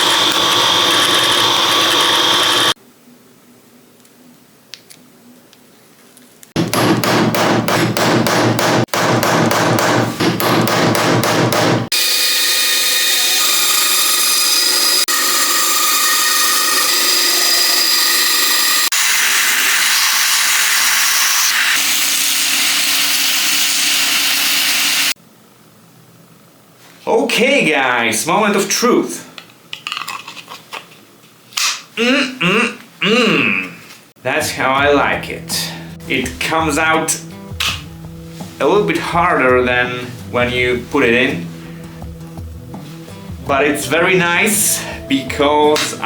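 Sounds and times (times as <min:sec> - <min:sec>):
motor whining: 0:00.0 - 0:02.8
power tool rapid strokes: 0:00.0 - 0:02.8.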